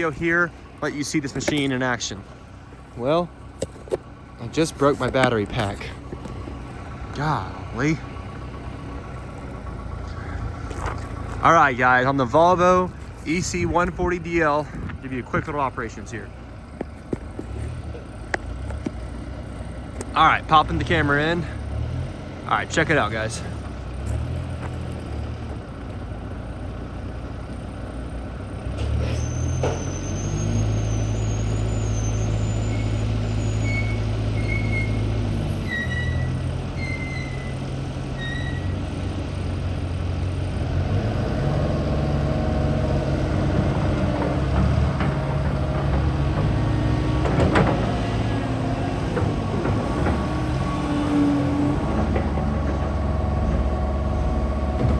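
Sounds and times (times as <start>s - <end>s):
excavator diesel engine under load: 0.0s - 54.9s
short high squeals: 28.9s - 38.8s.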